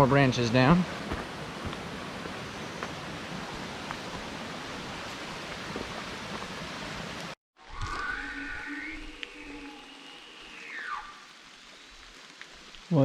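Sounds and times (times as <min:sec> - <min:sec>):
creek water rushing: 0:00.0 - 0:07.4.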